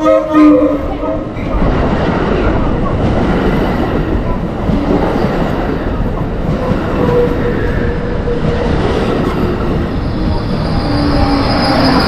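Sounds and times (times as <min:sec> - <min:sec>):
train wheels rumbling on rail: 0:00.0 - 0:12.0
high wheel squeal: 0:09.9 - 0:12.0.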